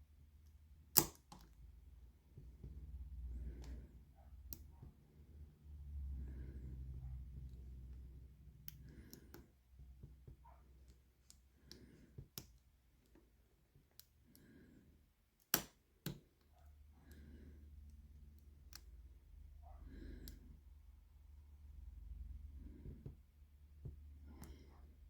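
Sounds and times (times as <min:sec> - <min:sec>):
lock pick clicking in padlock: 0:00.9 - 0:01.5.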